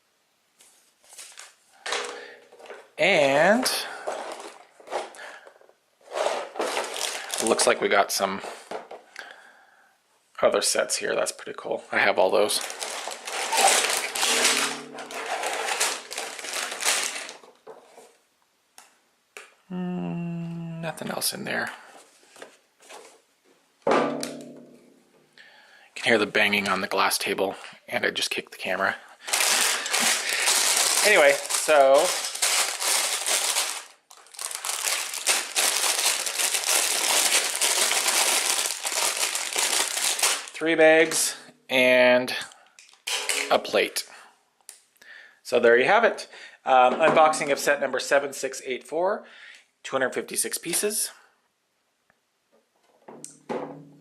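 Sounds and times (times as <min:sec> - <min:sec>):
plastic bags crinkling: 0:01.0 - 0:05.4, 0:06.0 - 0:08.8, 0:12.0 - 0:18.1, 0:29.2 - 0:41.4, 0:42.7 - 0:44.0
plastic pieces clattering: 0:01.3 - 0:02.9, 0:03.6 - 0:05.4, 0:06.1 - 0:07.8, 0:12.4 - 0:17.7, 0:29.3 - 0:40.6, 0:42.7 - 0:43.8
cardboard box rustling: 0:12.6 - 0:17.3.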